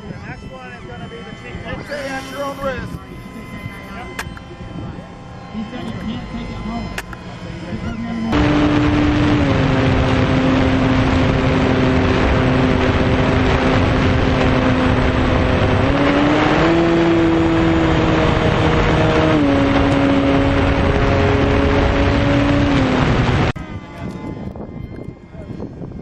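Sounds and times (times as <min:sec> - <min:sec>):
electric model plane motor humming: 0:00.0 - 0:26.0
rushing air noise: 0:08.3 - 0:24.7.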